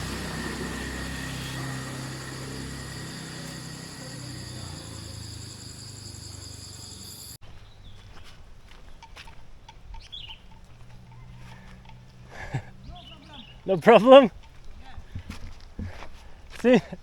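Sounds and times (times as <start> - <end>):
low steady rumble: 0.0 - 6.7
insects droning: 0.0 - 7.7.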